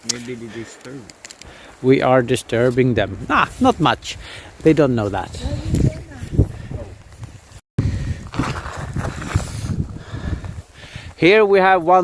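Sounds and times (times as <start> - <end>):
footsteps on forest floor: 8.2 - 9.8.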